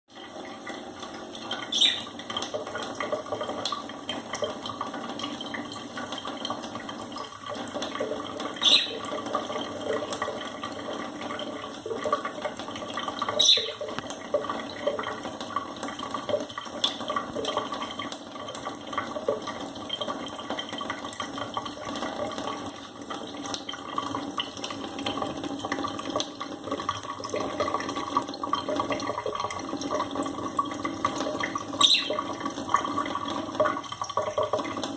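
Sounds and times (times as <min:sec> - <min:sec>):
running splashing water: 0:00.1 - 0:34.9
budgerigars chirping: 0:01.8 - 0:02.1, 0:08.6 - 0:09.0, 0:31.8 - 0:32.2.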